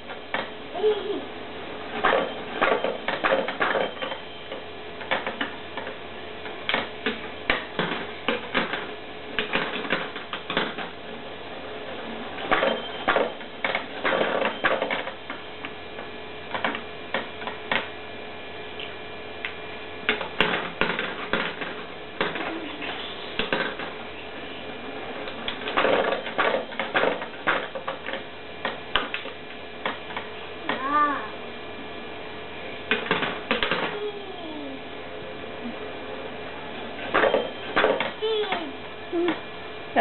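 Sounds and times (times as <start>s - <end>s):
small child vocal sound: 0.7s - 1.4s, 30.6s - 31.4s, 33.9s - 34.8s, 38.2s - 39.4s.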